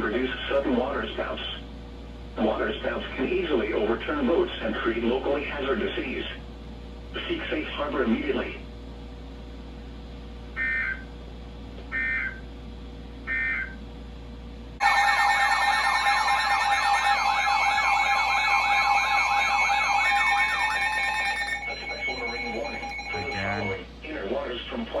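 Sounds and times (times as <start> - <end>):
warbling alert tone: 14.8 - 23.8.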